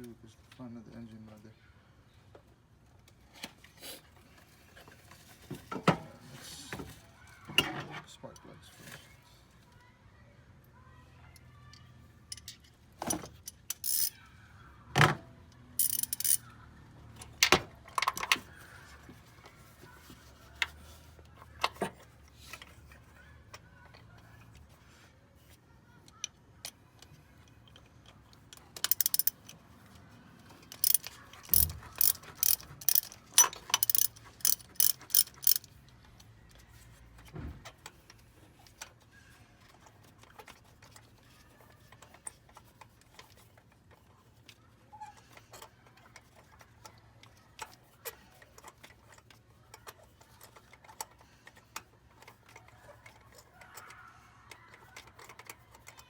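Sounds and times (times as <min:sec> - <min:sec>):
tools clicking and tapping: 0:11.3 - 0:14.2, 0:15.1 - 0:19.9, 0:26.0 - 0:29.7, 0:30.4 - 0:36.6, 0:39.6 - 0:56.0
ratchet wrench clicking: 0:13.4 - 0:14.2, 0:15.8 - 0:16.5, 0:28.8 - 0:29.5, 0:30.5 - 0:35.8.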